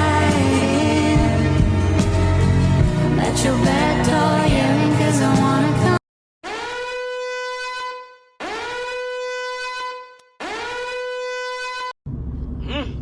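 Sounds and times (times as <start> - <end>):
horn blowing long notes: 6.4 - 11.9.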